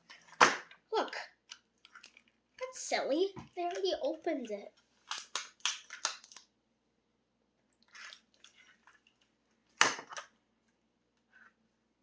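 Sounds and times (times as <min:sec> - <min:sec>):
plastic packaging rustling: 0:04.9 - 0:06.4
sharp plastic clack: 0:05.1 - 0:06.4.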